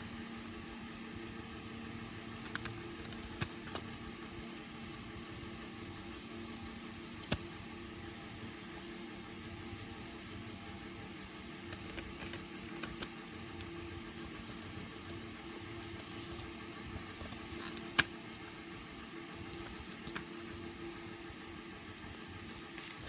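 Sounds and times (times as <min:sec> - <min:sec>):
steady background hum: 0:00.0 - 0:23.0
cd package rustling: 0:11.6 - 0:18.6, 0:19.4 - 0:20.8, 0:21.9 - 0:23.0.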